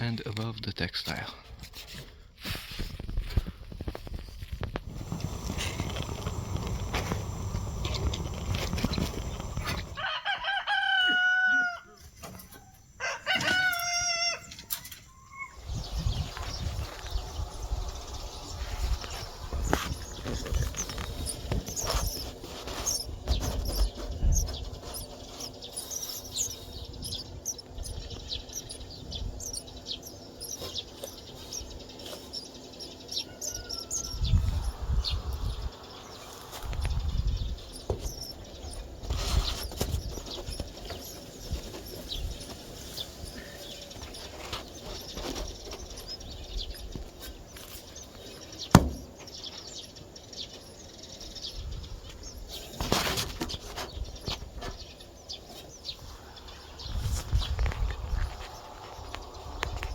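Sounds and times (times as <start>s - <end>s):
sparrows chirping: 4.1s - 59.9s
low rumbling bursts: 15.6s - 43.3s
sharp knock: 48.7s - 49.0s.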